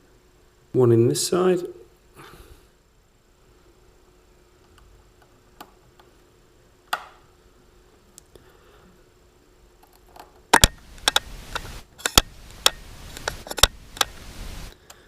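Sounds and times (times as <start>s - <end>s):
screwdriver clicks: 10.6s - 14.2s.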